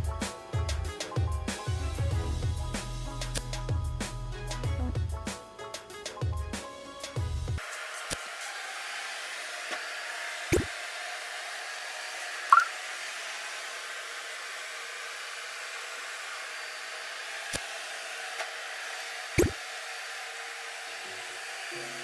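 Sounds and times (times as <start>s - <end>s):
robot vacuum whirring: 7.6s - 22.0s
short rising chirp: 12.5s - 12.7s.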